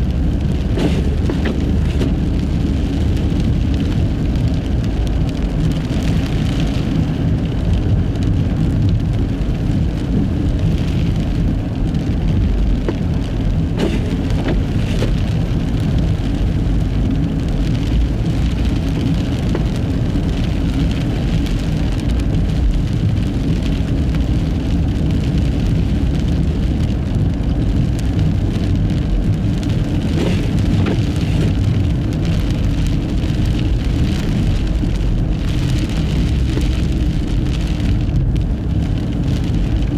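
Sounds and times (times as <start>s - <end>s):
tyres rumbling on snow: 0.0s - 39.9s
wind and snow hissing: 0.6s - 2.8s, 30.1s - 31.6s.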